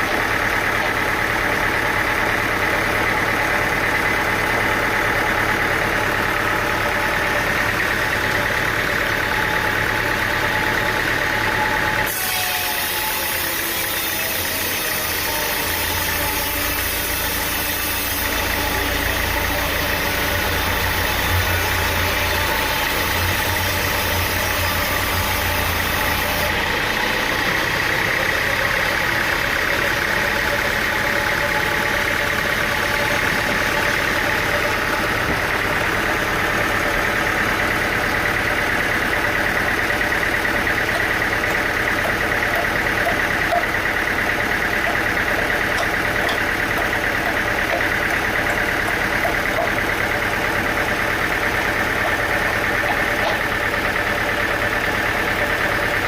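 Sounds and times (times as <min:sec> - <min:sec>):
engine drone: 0:00.0 - 0:56.0
sawmill machinery running: 0:00.0 - 0:56.0.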